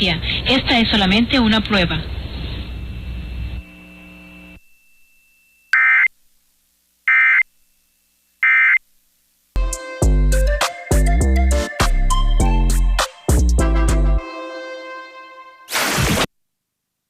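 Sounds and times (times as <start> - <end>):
harsh digital data tones: 7.1 - 7.5, 8.4 - 8.8
broadcast music: 9.6 - 15.7.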